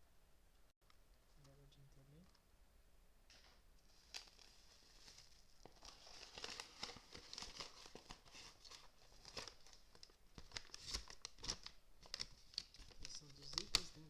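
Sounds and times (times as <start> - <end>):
plastic packaging crinkling: 3.3 - 14.0.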